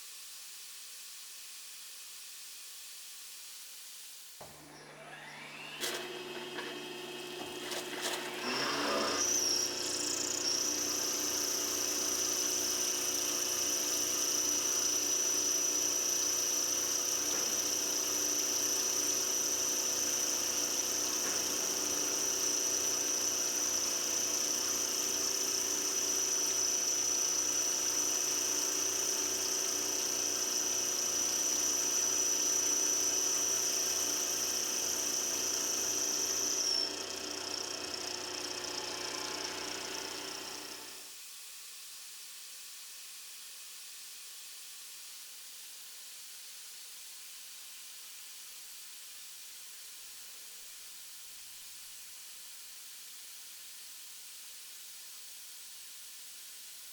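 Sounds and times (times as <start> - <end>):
milling cutter high whine: 4.4 - 41.1.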